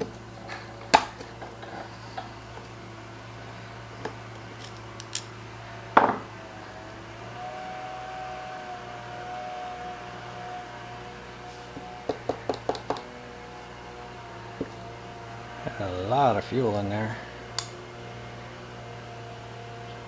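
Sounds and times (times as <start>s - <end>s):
faint steady hum: 0.0s - 20.0s
clicks: 4.0s - 5.4s, 17.5s - 17.9s
tools and parts handled: 4.0s - 5.4s.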